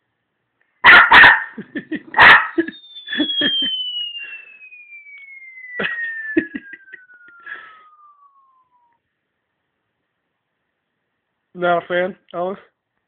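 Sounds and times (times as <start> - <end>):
dog barking: 0.8 - 1.6, 2.2 - 2.7
high tone sliding downward: 2.5 - 9.1.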